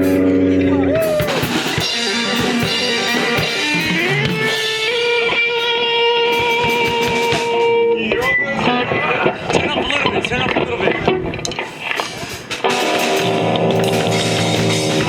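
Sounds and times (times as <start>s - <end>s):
drum hits: 1.0s - 5.0s, 6.4s - 7.7s, 12.5s - 15.0s
electric guitar note sliding up: 12.6s - 15.0s.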